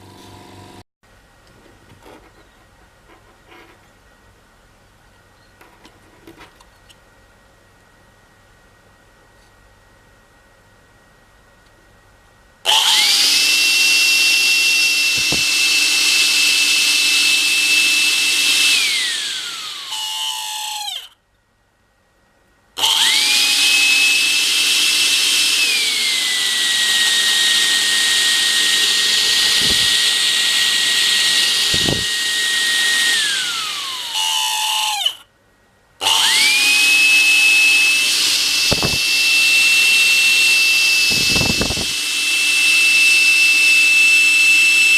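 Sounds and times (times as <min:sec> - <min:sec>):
vacuum cleaner motor whining: 0:12.7 - 0:21.1, 0:22.8 - 0:35.2, 0:36.0 - 0:44.9.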